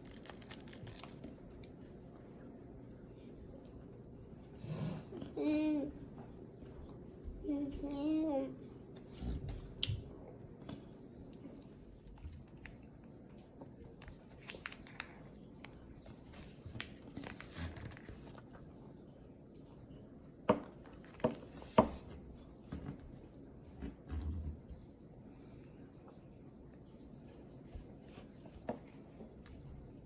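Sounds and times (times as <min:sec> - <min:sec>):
snack packaging crinkling: 0:00.0 - 0:01.7, 0:14.0 - 0:15.8
crunching and chewing: 0:00.0 - 0:02.4.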